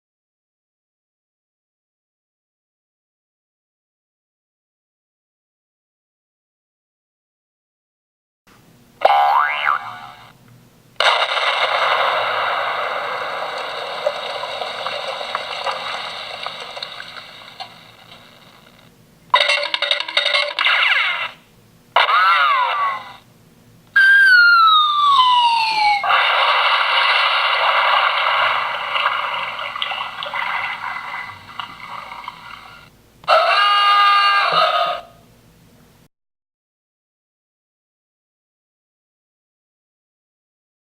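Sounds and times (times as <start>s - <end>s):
cartoon noise burst: 11.0s - 13.5s, 20.5s - 21.4s, 22.0s - 23.2s, 24.0s - 28.6s
falling whistle: 24.0s - 26.1s.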